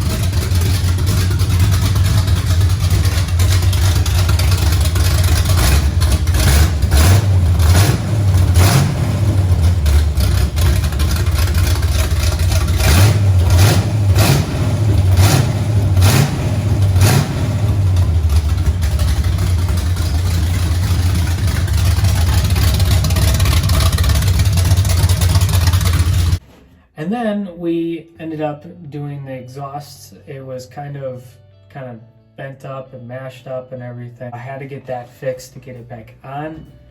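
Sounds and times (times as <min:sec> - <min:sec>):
engine lumpy idle with pops: 0:00.0 - 0:26.7.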